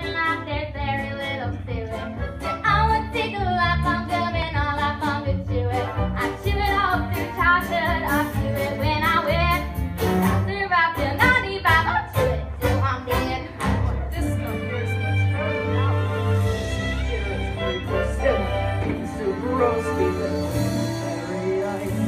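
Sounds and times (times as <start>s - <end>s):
girl singing: 0.0s - 9.6s
instrumental accompaniment: 0.0s - 22.0s.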